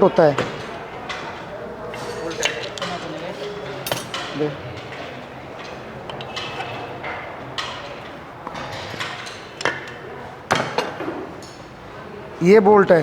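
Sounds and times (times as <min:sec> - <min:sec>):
metal parts clinking: 0:03.8 - 0:04.4.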